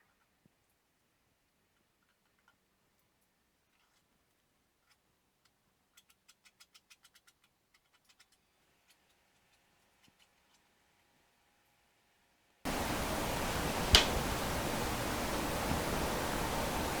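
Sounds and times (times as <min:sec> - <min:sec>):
faint ticks: 0:12.7 - 0:17.0
single clicks: 0:12.7 - 0:17.0.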